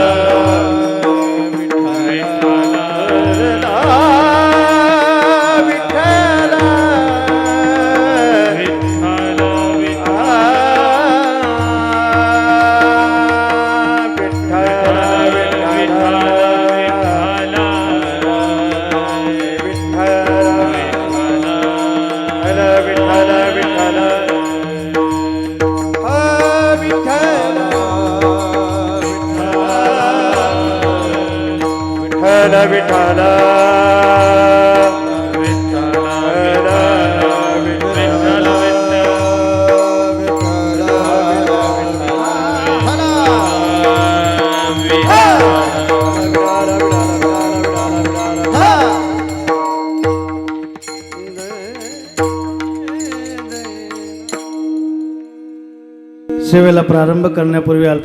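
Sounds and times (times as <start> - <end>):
person singing: 0.0 - 54.8
drum rhythm: 22.5 - 54.9.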